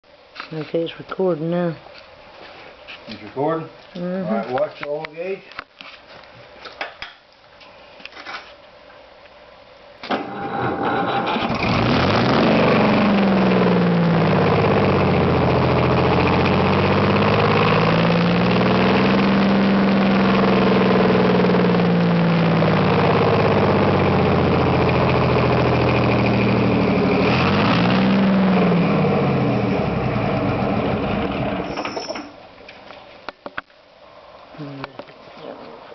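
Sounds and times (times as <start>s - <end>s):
diesel engine running: 10.2s - 31.9s.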